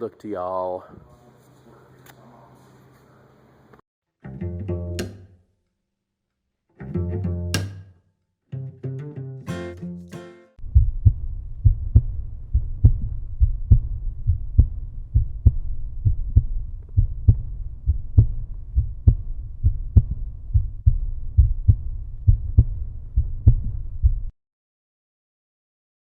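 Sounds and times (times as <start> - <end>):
muffled low thumping beat: 10.6 - 24.3.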